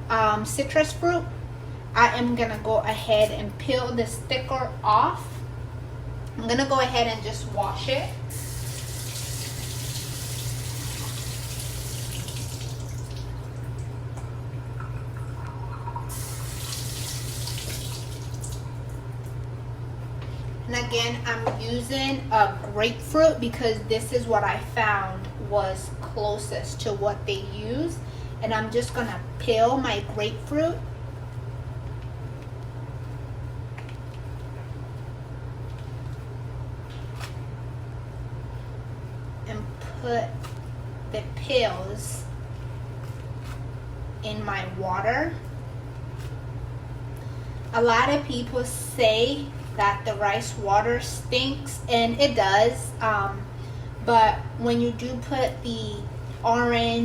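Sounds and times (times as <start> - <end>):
steady low hum: 0.0 - 57.0
kitchen tap running: 7.6 - 14.0, 14.7 - 19.0.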